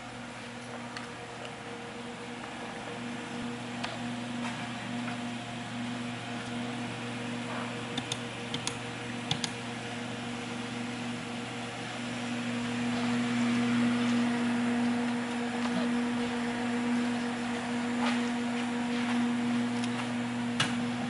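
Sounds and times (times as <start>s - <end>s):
electrical hum: 0.0s - 21.0s
furnace blower noise: 0.0s - 21.0s
sharp clicks: 8.0s - 9.6s.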